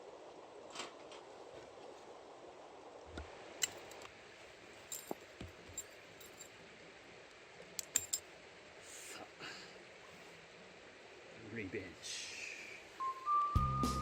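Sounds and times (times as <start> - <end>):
light metallic clicks and clinks: 3.6 - 4.1, 4.8 - 6.6, 7.8 - 8.3.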